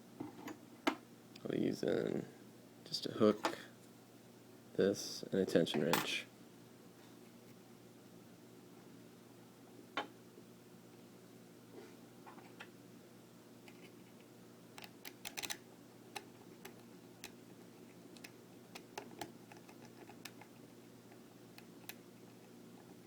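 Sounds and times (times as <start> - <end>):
lock pick metal clicks: 14.8 - 15.6.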